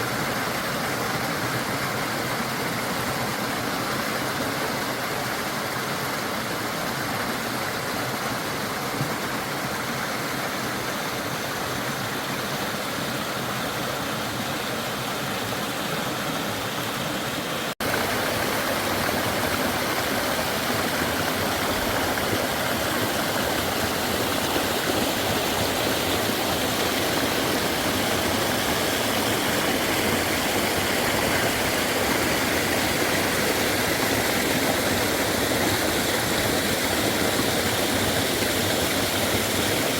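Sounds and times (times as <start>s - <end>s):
stream water flowing: 0.0s - 39.9s.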